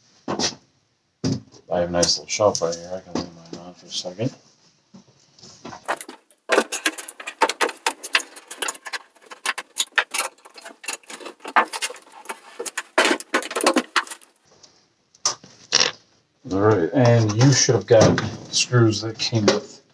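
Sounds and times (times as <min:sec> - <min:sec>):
metal screws rattling: 0:05.8 - 0:14.4.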